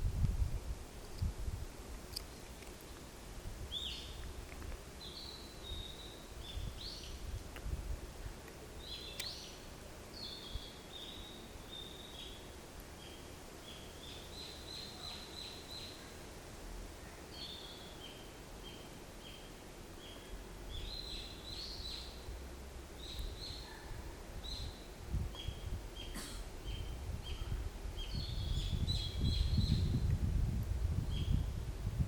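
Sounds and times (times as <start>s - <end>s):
songbird chirping: 3.7s - 7.3s, 8.8s - 16.3s, 16.9s - 30.1s.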